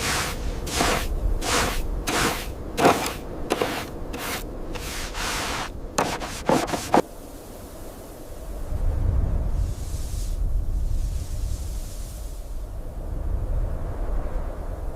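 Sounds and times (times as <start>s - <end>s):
scraping through sand: 0.0s - 7.0s.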